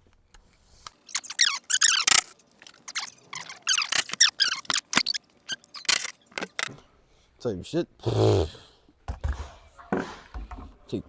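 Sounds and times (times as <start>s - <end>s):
bolts squeaking as they turn: 0.9s - 6.7s.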